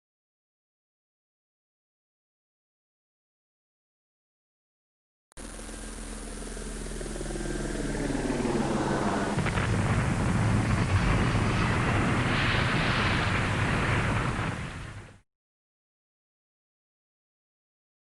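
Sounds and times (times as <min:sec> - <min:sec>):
aircraft engine drone: 0:05.4 - 0:15.2
crash and rumbling explosion: 0:08.4 - 0:15.2.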